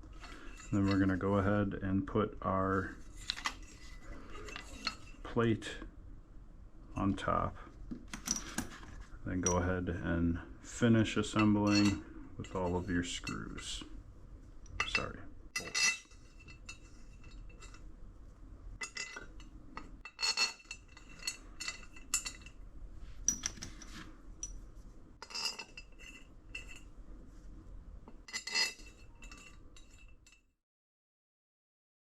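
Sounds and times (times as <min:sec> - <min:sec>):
low steady hum: 0:00.0 - 0:30.5
metal tools clinking: 0:00.2 - 0:01.5, 0:03.0 - 0:05.3, 0:08.2 - 0:09.8, 0:11.2 - 0:13.9, 0:14.7 - 0:17.8, 0:18.8 - 0:22.6, 0:23.2 - 0:24.6, 0:25.2 - 0:26.9, 0:28.2 - 0:30.4.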